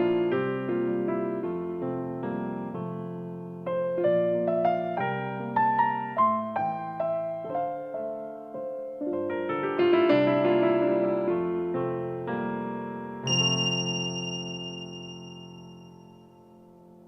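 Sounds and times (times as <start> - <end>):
electric piano ringtone melody: 0.0 - 17.0
bright steady high tone: 13.3 - 16.8.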